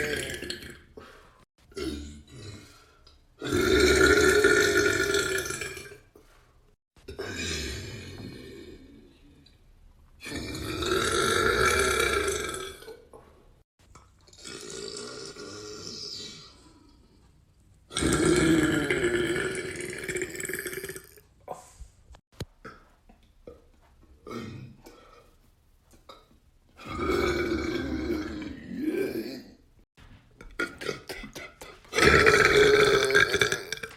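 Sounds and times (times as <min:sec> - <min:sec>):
man burping: 0:00.0 - 0:01.0, 0:01.7 - 0:02.7, 0:03.4 - 0:06.0, 0:07.1 - 0:08.9, 0:10.2 - 0:13.0, 0:14.3 - 0:16.6, 0:17.9 - 0:21.3, 0:22.6 - 0:25.2, 0:26.0 - 0:29.6, 0:30.4 - 0:33.9.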